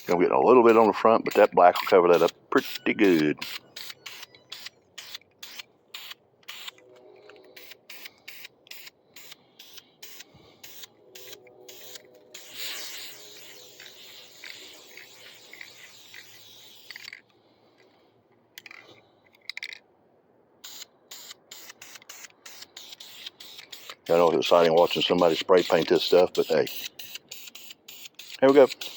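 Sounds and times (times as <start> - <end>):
spray paint hissing: 0.0 - 6.8, 7.4 - 17.2, 20.6 - 28.9
spray can ball rattling: 7.9 - 17.2, 20.6 - 28.9.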